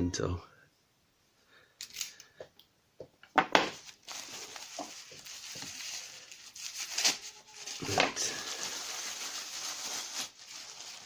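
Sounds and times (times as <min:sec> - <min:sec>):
packing material crinkling: 0:03.7 - 0:11.0.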